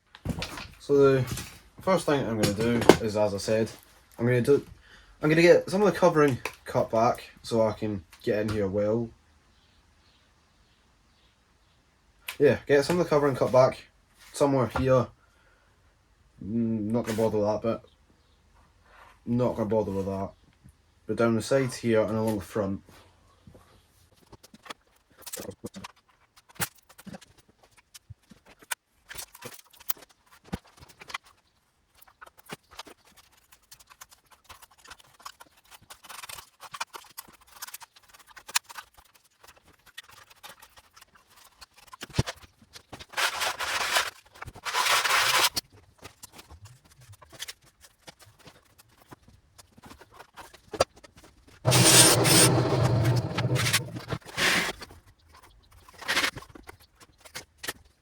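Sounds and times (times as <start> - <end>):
film cutting ticks and scrapes: 51.7 - 54.7
rasping film cutting: 51.7 - 54.7.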